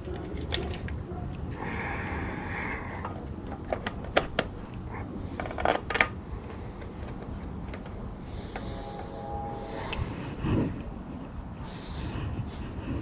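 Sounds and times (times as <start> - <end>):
steady low rumble: 0.0 - 13.0
sharp clicks and knocks: 3.0 - 4.8
rustling hissing noise: 6.2 - 13.0.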